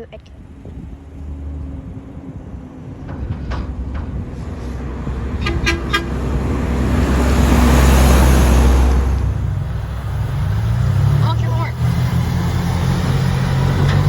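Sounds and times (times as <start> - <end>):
heavy vehicle driving past: 0.4 - 14.0
quick horn toots: 5.3 - 6.6.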